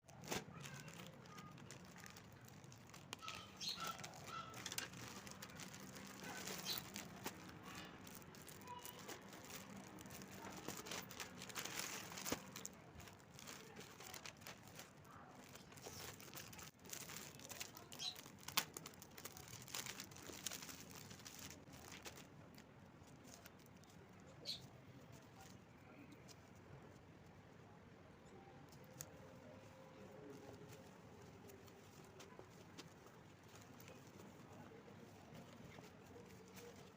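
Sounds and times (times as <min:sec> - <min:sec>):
packaging rustling and crinkling: 0:00.1 - 0:24.0.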